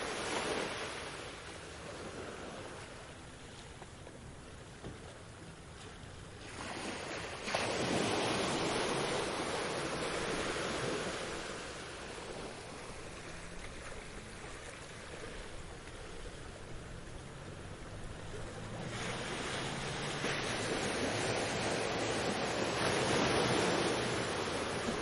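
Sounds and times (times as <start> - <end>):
sea waves washing: 0.0 - 25.0
wave breaking with hissing surf: 6.4 - 15.8, 17.8 - 25.0.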